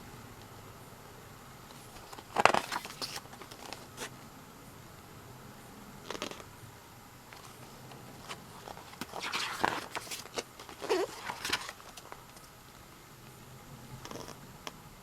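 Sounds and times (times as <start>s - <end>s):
paper and plastic rustling: 1.8s - 4.1s, 7.3s - 12.5s.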